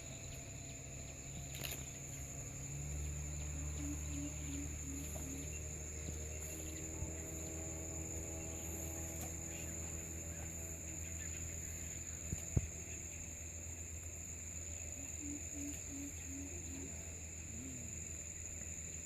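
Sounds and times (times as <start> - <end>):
insects droning: 0.0 - 19.0
low steady hum: 0.0 - 19.0.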